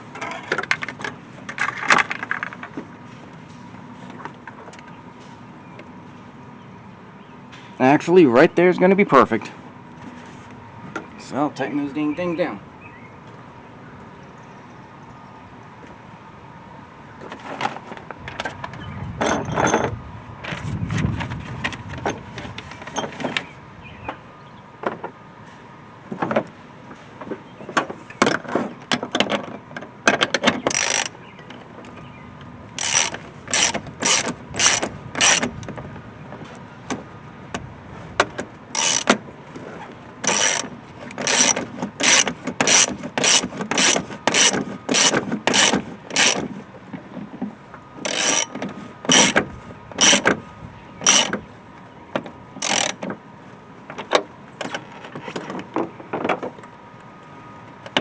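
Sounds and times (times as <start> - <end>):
ratchet wrench clicking: 30.7 - 31.1, 32.8 - 35.4, 38.8 - 39.1, 40.3 - 40.6, 41.2 - 46.4, 48.1 - 48.5, 50.0 - 50.2, 51.1 - 51.3, 52.6 - 53.0.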